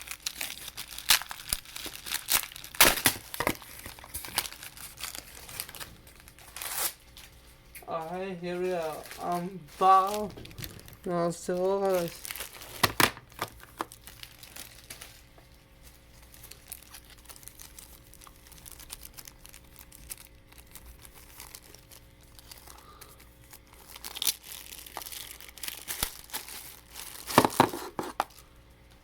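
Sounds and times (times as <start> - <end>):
toy packaging crinkling and tearing: 0.0 - 28.6.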